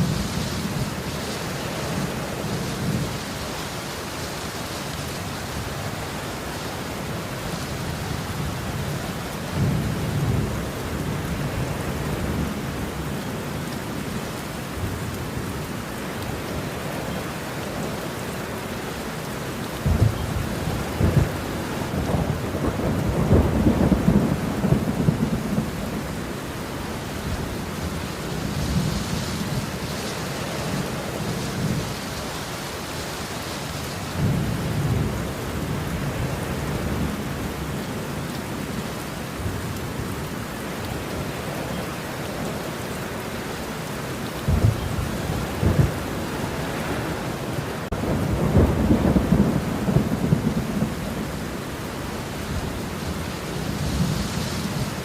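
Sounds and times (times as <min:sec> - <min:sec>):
steady rain: 0:00.0 - 0:55.0
thunder rumbling: 0:19.8 - 0:26.4, 0:44.4 - 0:55.0.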